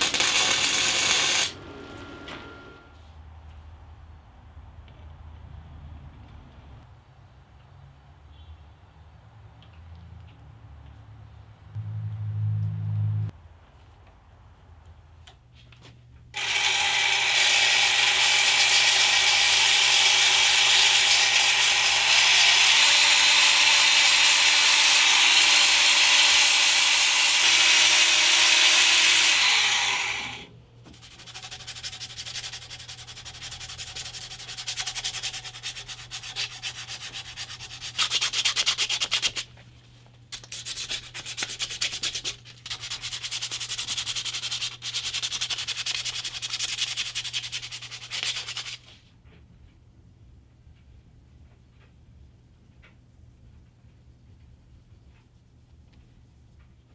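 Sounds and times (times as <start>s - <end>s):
hand-sanding strokes: 0.0s - 1.5s, 16.4s - 39.5s, 40.4s - 49.0s
belt grinder sanding steel: 0.0s - 1.9s, 16.4s - 39.4s.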